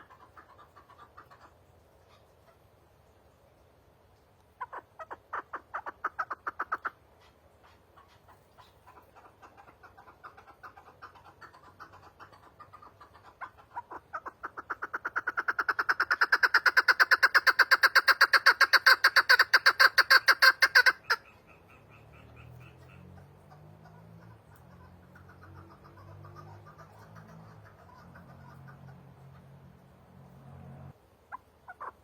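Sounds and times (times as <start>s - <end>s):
partridge clucking calls: 0.0s - 3.4s, 4.2s - 29.9s, 31.3s - 32.0s.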